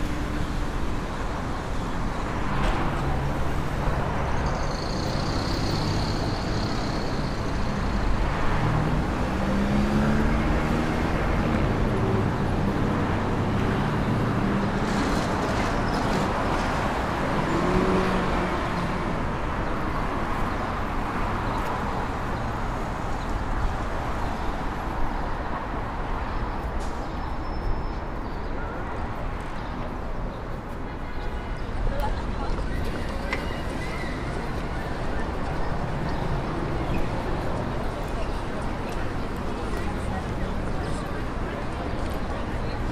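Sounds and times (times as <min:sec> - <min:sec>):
street traffic: 0:00.0 - 0:42.9.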